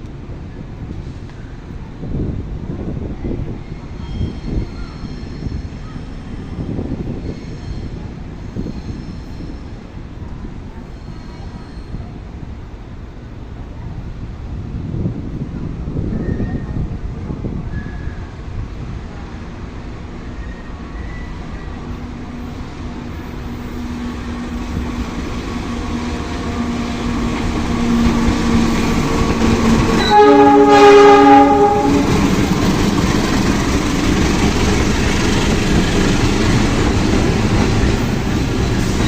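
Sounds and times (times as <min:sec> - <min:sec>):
diesel locomotive engine: 0:00.0 - 0:39.0
train rolling noise: 0:00.0 - 0:39.0
multi-tone train horn: 0:23.9 - 0:32.9.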